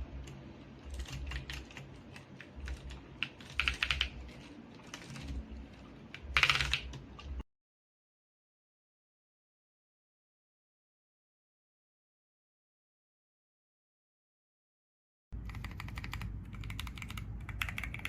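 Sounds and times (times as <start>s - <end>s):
mechanical keyboard typing: 0.2s - 7.4s, 15.4s - 18.0s.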